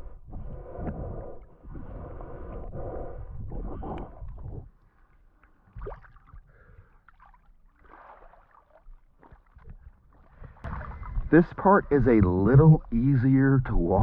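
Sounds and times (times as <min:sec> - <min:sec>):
water sloshing and gurgling: 0:00.1 - 0:14.0
soft splashes: 0:04.8 - 0:13.1.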